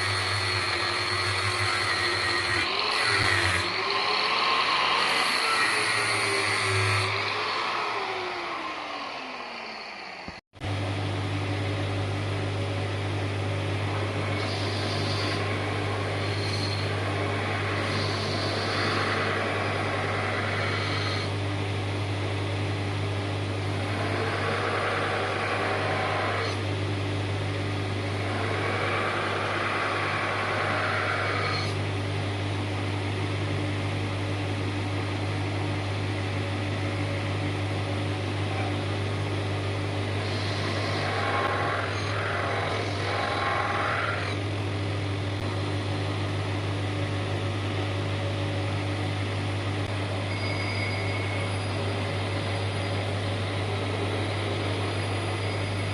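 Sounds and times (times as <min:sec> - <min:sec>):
abrasive grinding on metal: 0:00.0 - 0:08.9, 0:13.8 - 0:21.4, 0:23.5 - 0:31.8, 0:39.9 - 0:44.4
power tool motor winding down: 0:00.0 - 0:10.1, 0:13.8 - 0:21.9, 0:23.5 - 0:26.7, 0:27.7 - 0:31.8, 0:39.8 - 0:44.5
motor humming: 0:00.0 - 0:55.9.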